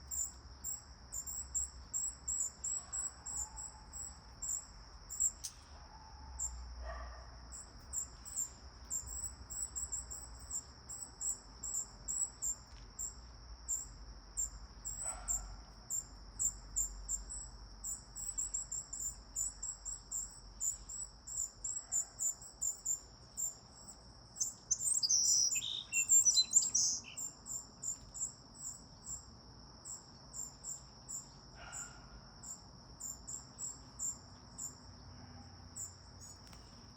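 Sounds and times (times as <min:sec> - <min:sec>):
insects droning: 0:00.0 - 0:36.9
bird calls: 0:24.4 - 0:28.0.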